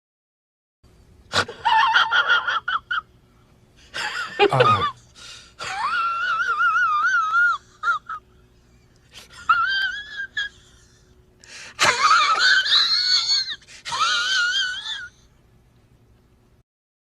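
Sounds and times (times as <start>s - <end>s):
squeaky wheezing laugh: 11.8s - 15.2s.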